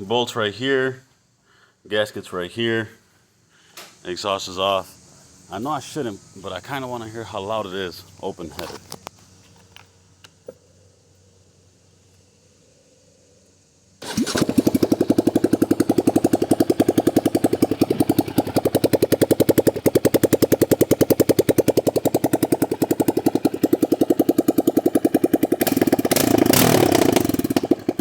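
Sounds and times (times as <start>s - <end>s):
engine idling with loud pulses: 14.0s - 28.0s
engine revving: 14.0s - 28.0s.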